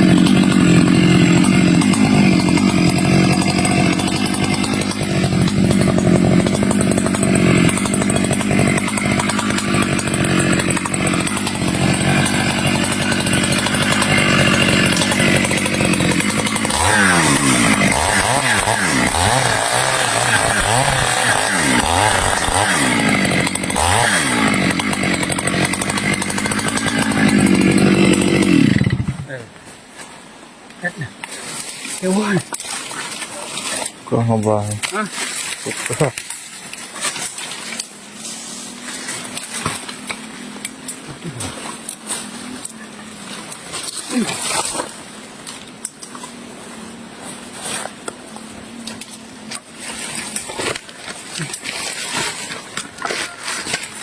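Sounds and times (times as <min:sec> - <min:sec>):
chainsaw cutting wood: 0:00.0 - 0:29.3, 0:38.8 - 0:48.2, 0:48.9 - 0:54.0.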